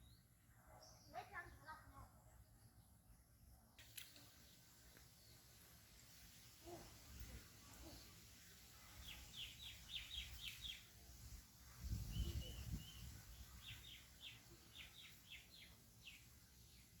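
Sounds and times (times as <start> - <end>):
bird chirping: 6.6 - 17.0.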